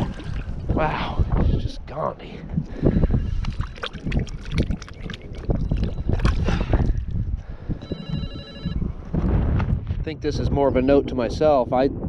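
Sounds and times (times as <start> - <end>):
water splashing at the edge: 0.0 - 1.6, 2.6 - 7.3
wind buffeting microphone: 0.0 - 12.0
steady tone: 3.2 - 9.4.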